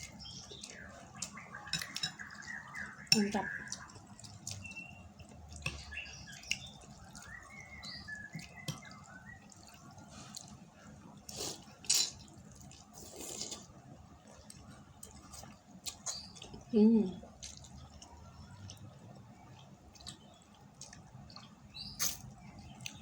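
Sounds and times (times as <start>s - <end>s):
noisy slurps: 6.4s - 16.2s.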